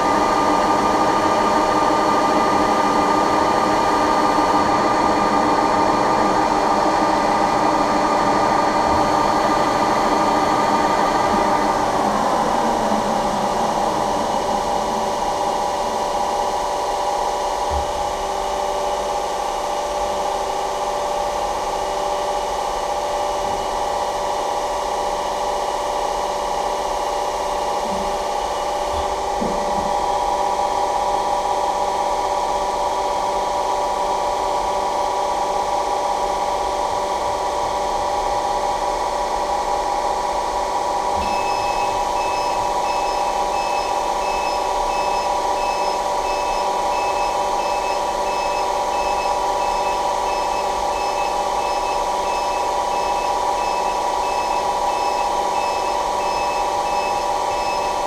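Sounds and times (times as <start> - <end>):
rolling machine humming: 0.0 - 19.4, 41.0 - 58.0
fast high electronic beeps: 41.2 - 58.0.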